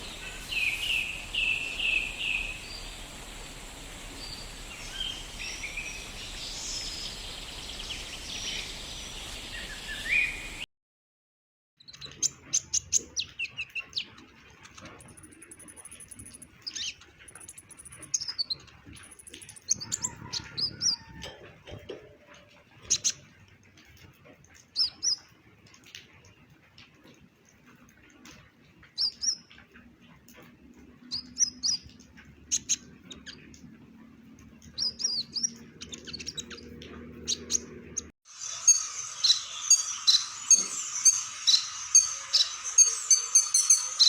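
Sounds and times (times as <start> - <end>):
bird chirping and twittering: 0.0 - 10.6, 11.9 - 21.1, 31.1 - 33.6, 34.6 - 44.0.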